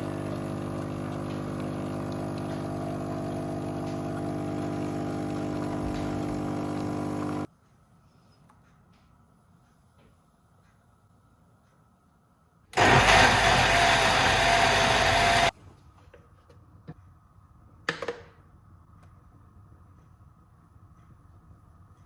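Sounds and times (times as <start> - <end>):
kitchen appliance motor humming: 0.0 - 7.5, 12.8 - 15.5.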